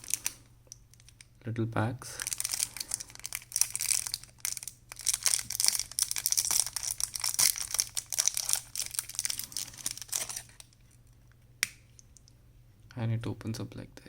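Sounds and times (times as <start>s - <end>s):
packaging crinkling and tearing: 0.0s - 1.2s, 2.2s - 10.9s.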